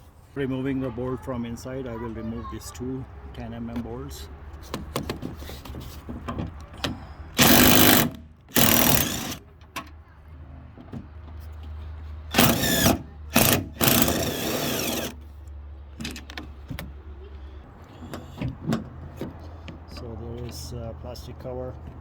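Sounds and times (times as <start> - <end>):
power tool spinning: 7.4 - 9.4, 12.3 - 15.2.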